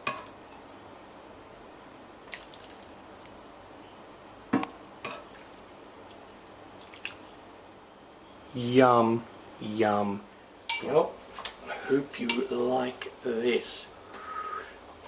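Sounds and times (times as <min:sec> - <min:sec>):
utensil clinking against saucepan: 0:12.3 - 0:12.5.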